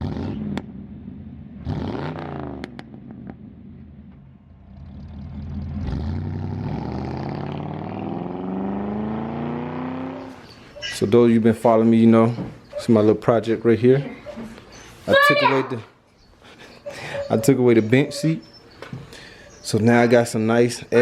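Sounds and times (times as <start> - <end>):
car engine revving: 0.0 - 11.0.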